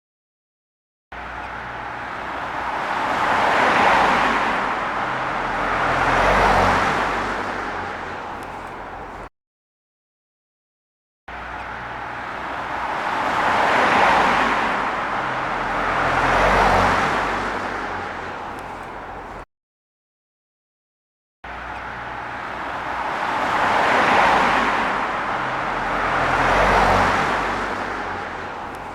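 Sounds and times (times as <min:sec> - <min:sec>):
cars passing: 0:01.2 - 0:09.3, 0:11.3 - 0:19.4, 0:21.5 - 0:28.9
engine hum: 0:01.3 - 0:09.2, 0:11.6 - 0:19.4, 0:21.6 - 0:28.9.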